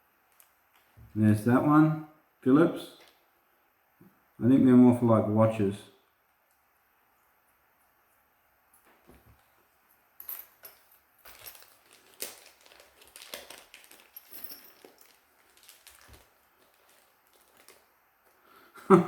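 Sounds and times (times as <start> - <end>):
small tools clicking and rattling: 10.2 - 17.9.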